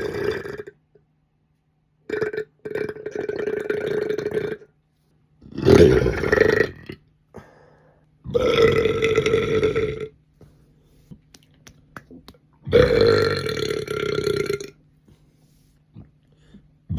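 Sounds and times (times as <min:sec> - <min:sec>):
loud human burps: 0:00.0 - 0:00.8, 0:02.1 - 0:04.7, 0:05.4 - 0:07.0, 0:08.3 - 0:10.2, 0:12.7 - 0:14.8.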